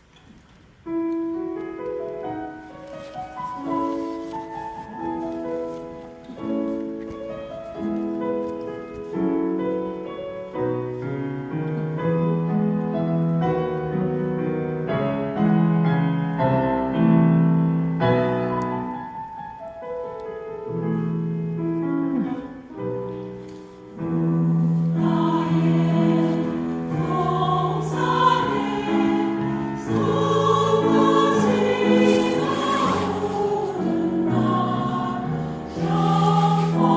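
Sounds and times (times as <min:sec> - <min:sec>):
piano accompaniment: 0:00.7 - 0:36.9
mixed choir singing a hymn: 0:24.6 - 0:36.9.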